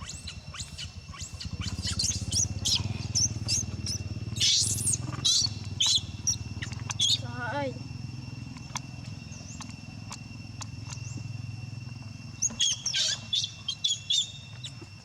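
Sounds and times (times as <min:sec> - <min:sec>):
young monkey squealing: 0:00.0 - 0:07.3, 0:12.6 - 0:14.0.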